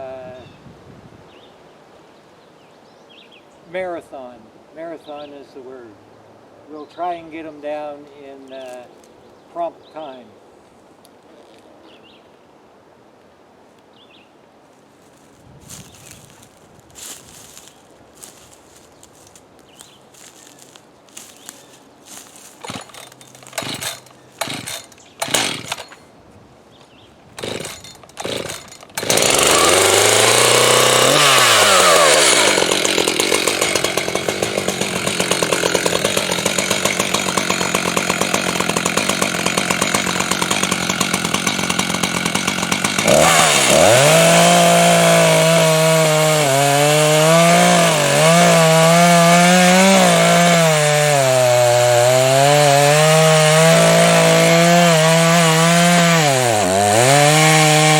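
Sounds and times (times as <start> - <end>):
chainsaw cutting wood: 22.1 - 26.1, 27.4 - 57.9.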